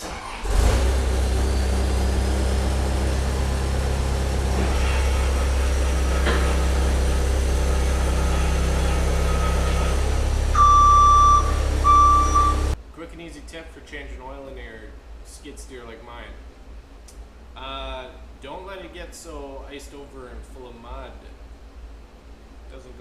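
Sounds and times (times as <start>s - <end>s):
diesel engine idling: 0.0s - 12.8s
high electronic warning tone: 7.6s - 12.8s.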